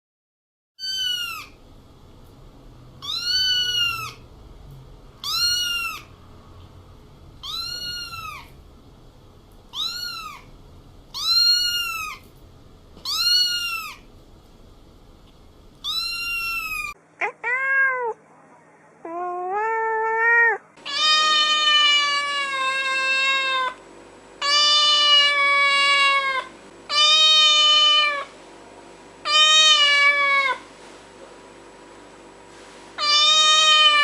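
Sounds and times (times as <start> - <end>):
cat meowing high-pitched: 0.8 - 1.6, 3.0 - 4.2, 5.2 - 6.1, 7.4 - 8.5, 9.7 - 10.5, 11.1 - 12.2, 13.0 - 14.0, 15.8 - 18.2, 19.0 - 23.8, 24.4 - 28.3, 29.3 - 30.6, 33.0 - 34.0.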